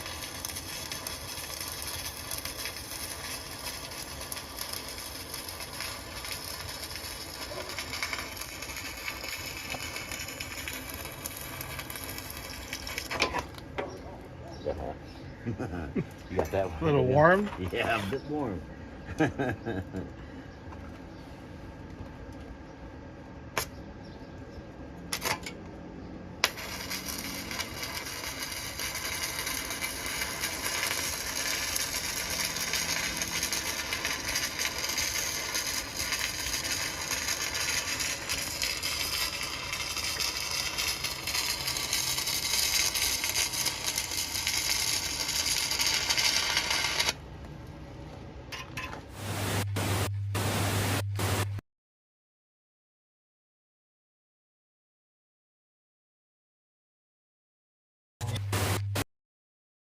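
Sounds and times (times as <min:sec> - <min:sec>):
welding arc crackling and hissing: 0:00.0 - 0:13.6, 0:26.4 - 0:47.2, 0:49.1 - 0:51.6, 0:58.2 - 0:59.0
low steady hum: 0:00.0 - 0:51.6.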